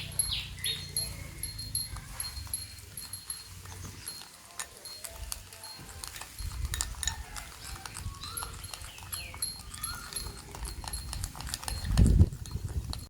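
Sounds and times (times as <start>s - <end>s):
utensils tapping against a bowl: 1.0s - 13.0s.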